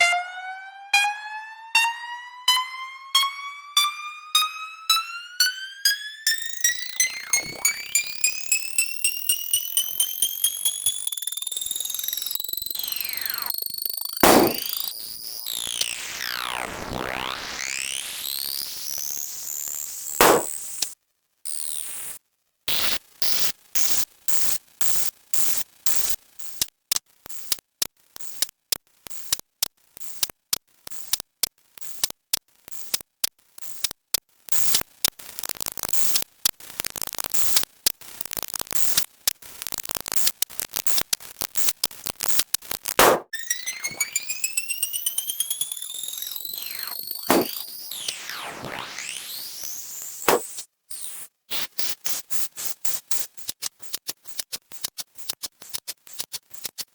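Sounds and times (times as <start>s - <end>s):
swooping whistle-like glides: 6.2s - 14.7s
sharp cartoon hit: 14.2s - 14.8s, 20.2s - 20.5s, 43.0s - 43.3s, 47.3s - 47.7s, 50.3s - 50.5s
choppy static bursts: 35.2s - 43.2s.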